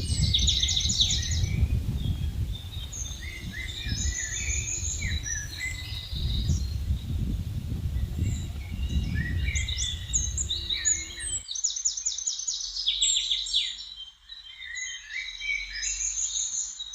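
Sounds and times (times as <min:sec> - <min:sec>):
wind rumble on microphone: 0:00.0 - 0:11.4
wild birds singing: 0:00.0 - 0:16.9.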